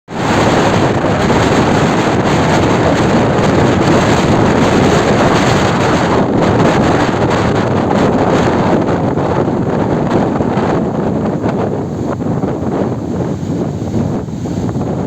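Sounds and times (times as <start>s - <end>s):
stormy sea surf: 0.1s - 15.0s
wind buffeting microphone: 0.1s - 15.0s.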